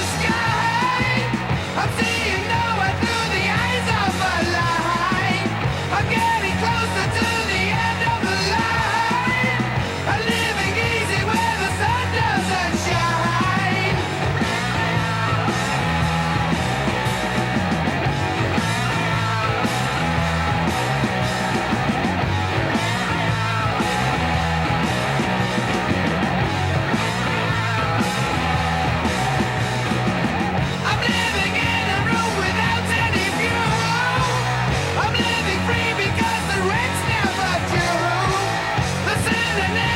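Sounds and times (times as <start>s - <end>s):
shouted singing voice: 0.0s - 16.5s, 30.8s - 39.9s
punk rock band playing: 0.0s - 39.9s.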